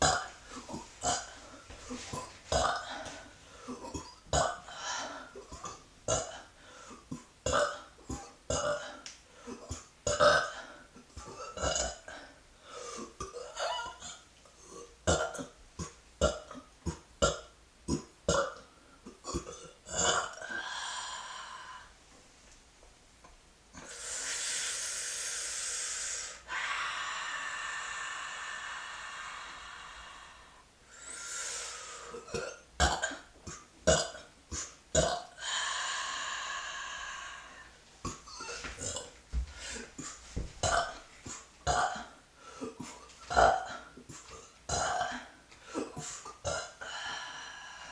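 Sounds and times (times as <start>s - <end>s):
woman burping: 0.0s - 4.7s, 17.2s - 20.6s, 32.2s - 35.5s, 38.0s - 39.2s, 40.6s - 41.0s, 41.6s - 44.0s, 44.7s - 46.8s.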